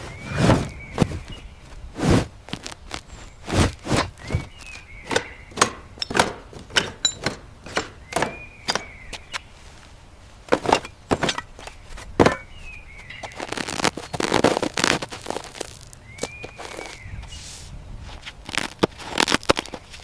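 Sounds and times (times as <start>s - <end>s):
sharp knocks and clacks: 5.1s - 9.0s.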